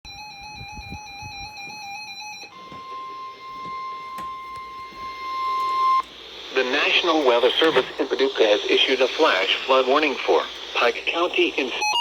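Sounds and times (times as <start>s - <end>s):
steady warning alarm tone: 0.1s - 12.0s.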